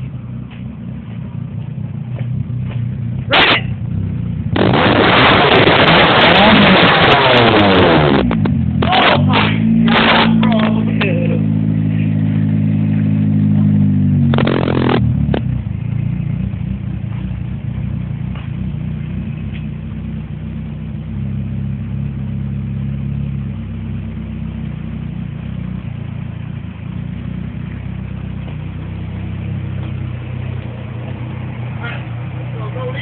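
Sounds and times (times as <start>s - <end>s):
car engine revving and idling: 0.0s - 33.0s.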